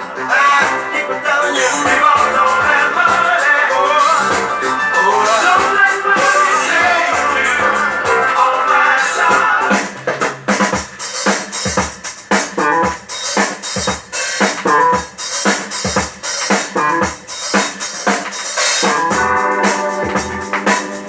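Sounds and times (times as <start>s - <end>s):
soul music: 0.0s - 11.1s, 18.6s - 21.0s
drum kit beat: 0.0s - 21.0s.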